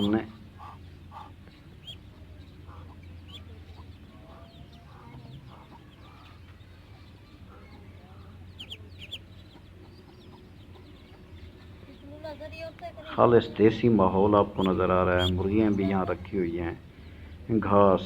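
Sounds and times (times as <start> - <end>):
chickens clucking softly: 0.0 - 11.6, 14.5 - 16.5.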